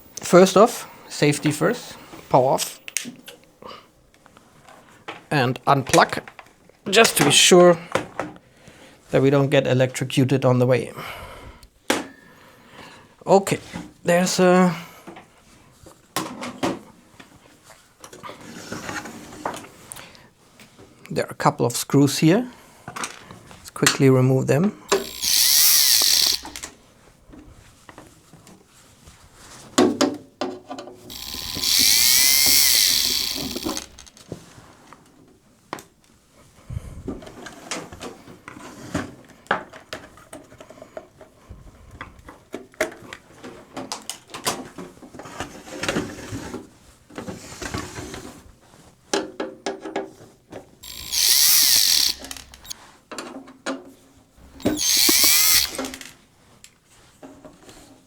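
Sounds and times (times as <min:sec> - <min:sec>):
power screwdriver whirring: 0:24.9 - 0:26.7, 0:31.1 - 0:34.2, 0:50.8 - 0:52.7, 0:54.4 - 0:56.1
screws and casing clicking: 0:24.9 - 0:26.7, 0:31.1 - 0:34.2, 0:50.8 - 0:52.7, 0:54.4 - 0:56.1.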